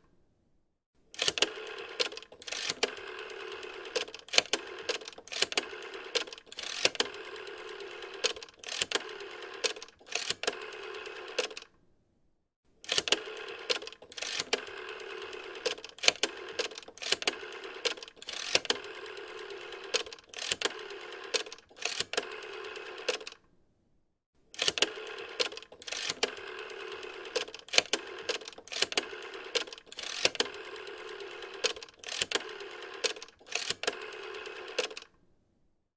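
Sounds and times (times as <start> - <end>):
rotary telephone dial clicking: 1.2 - 11.7, 12.9 - 23.4, 24.6 - 35.1.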